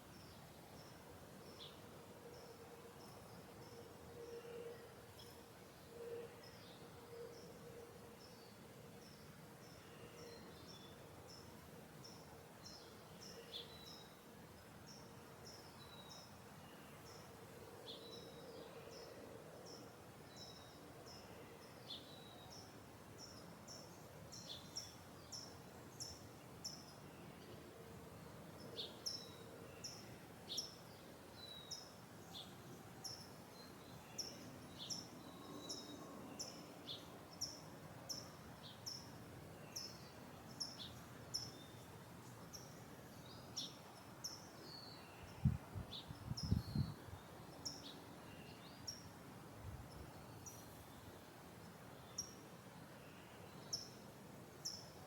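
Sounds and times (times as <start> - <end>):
small birds chirping: 28.6 - 49.2.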